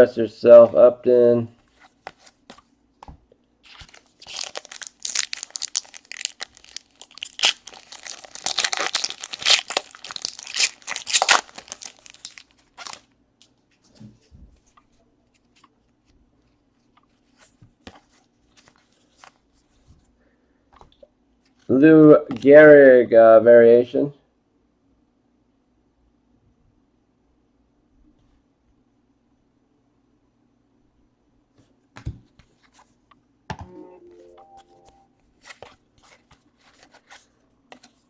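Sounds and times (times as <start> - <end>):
foil wrapper tearing and crinkling: 3.7 - 13.1.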